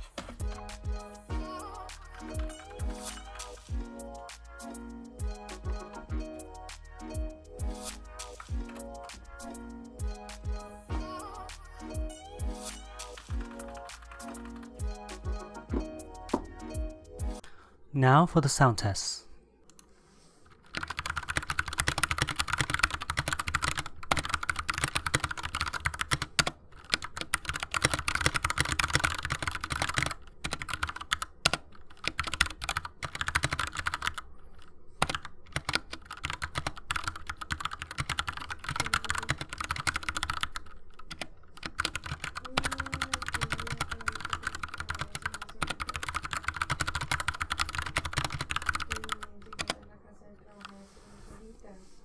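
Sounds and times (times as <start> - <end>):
mechanical keyboard typing: 13.0 - 14.8, 20.5 - 49.9.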